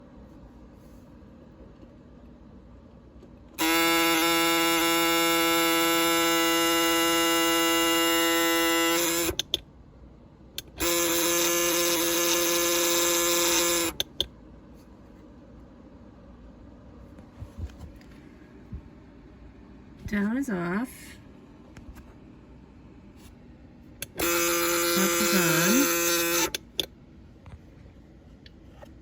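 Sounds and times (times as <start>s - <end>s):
alarm clock buzzing: 3.6s - 9.5s, 10.6s - 14.1s, 24.0s - 26.7s.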